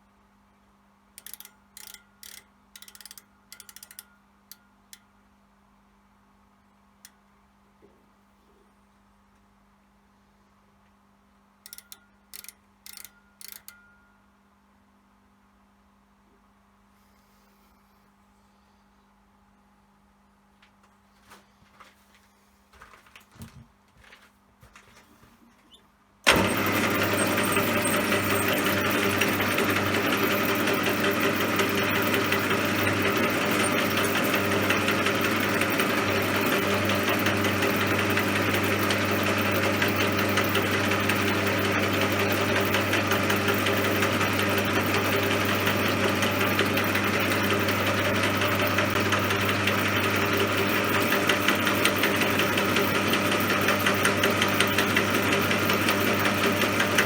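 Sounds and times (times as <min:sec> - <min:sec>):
metal lathe running: 0:26.3 - 0:57.0.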